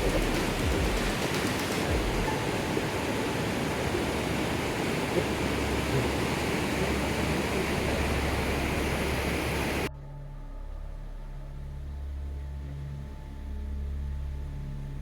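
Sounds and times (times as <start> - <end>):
waterfall roar: 0.0 - 9.9.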